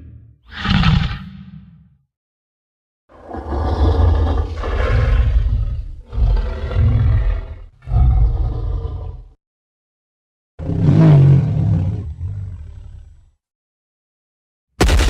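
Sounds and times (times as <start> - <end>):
deep monster roars: 3.1 - 9.4, 10.6 - 13.4.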